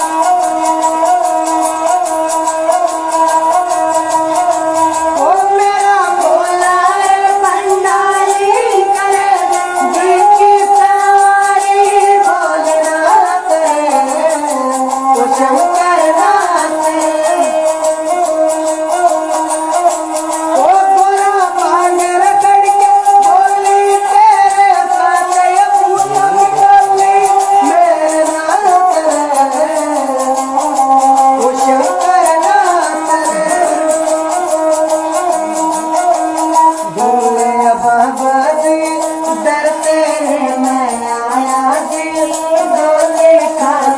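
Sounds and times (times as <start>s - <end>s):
shaker-like rattling percussion: 0.0s - 43.9s
sliding melodic notes: 24.0s - 38.0s.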